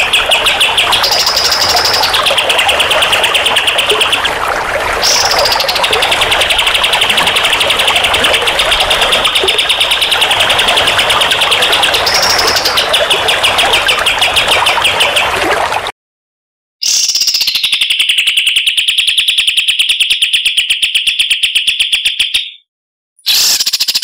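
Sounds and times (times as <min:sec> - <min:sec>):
songbird trill: 0:00.0 - 0:04.3, 0:05.0 - 0:15.2.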